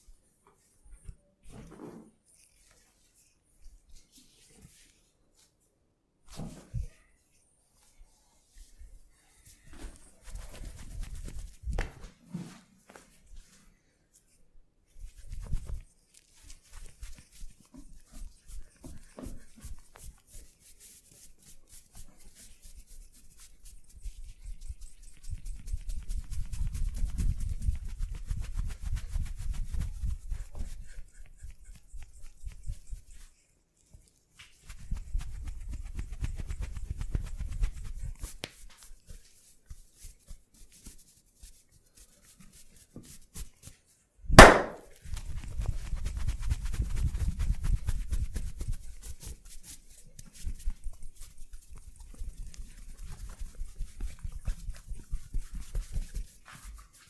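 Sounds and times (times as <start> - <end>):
loud sharp crack: 44.4 - 44.8
hands tapping and slapping skin: 44.4 - 45.0.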